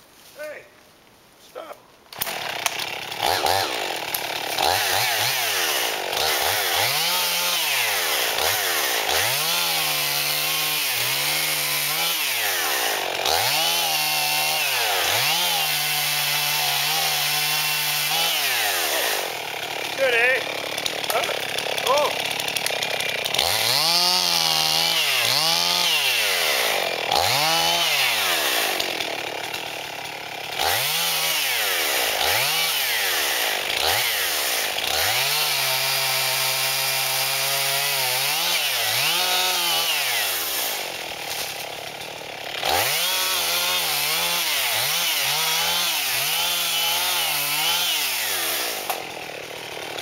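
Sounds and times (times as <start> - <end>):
chainsaw cutting wood: 2.1 - 50.0.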